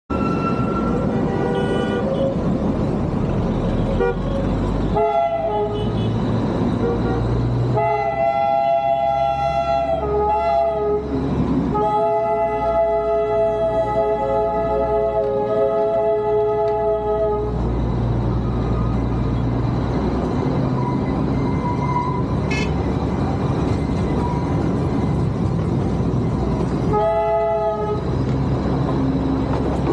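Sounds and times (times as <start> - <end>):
train horn tooting: 0.1 - 2.4, 3.9 - 6.2, 6.8 - 11.1, 11.7 - 17.6, 26.8 - 28.2
moving train rumbling: 0.1 - 29.9.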